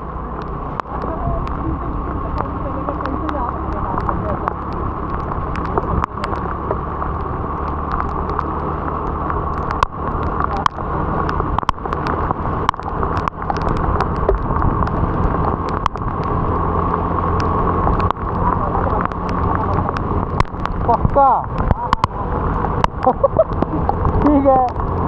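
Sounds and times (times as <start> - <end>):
motor scooter engine hum: 0.0 - 25.0
road noise: 0.0 - 25.0
sharp ticks: 2.3 - 16.3.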